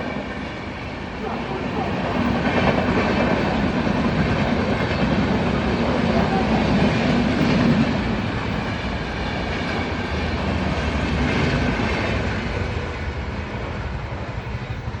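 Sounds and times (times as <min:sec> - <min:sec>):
train wheels rumbling on track: 0:00.0 - 0:15.0.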